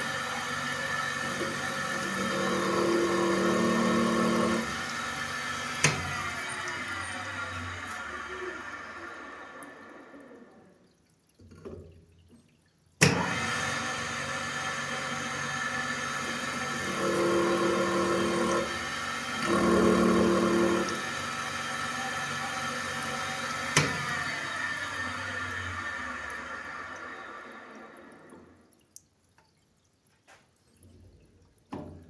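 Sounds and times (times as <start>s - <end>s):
bench grinder motor running: 0.0s - 10.2s, 13.2s - 28.0s.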